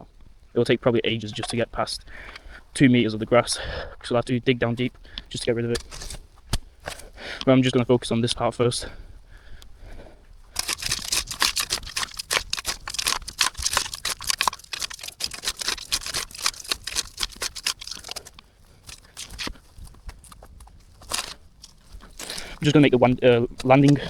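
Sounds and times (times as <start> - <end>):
shovel digging rocky dirt: 4.8 - 7.6, 10.5 - 24.0.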